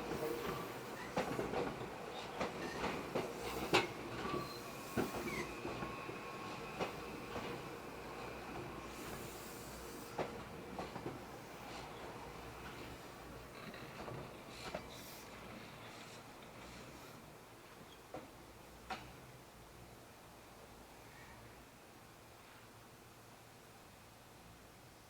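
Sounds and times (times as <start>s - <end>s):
train wheels knocking and clattering: 0.0s - 16.9s, 18.1s - 19.3s.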